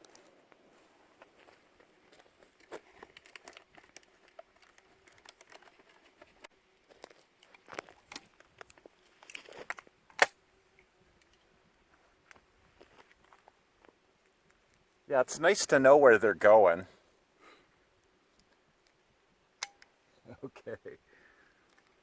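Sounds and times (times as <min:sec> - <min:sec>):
sharp shotgun click: 0:19.6 - 0:19.9
shotgun reloading clicks: 0:19.6 - 0:19.9.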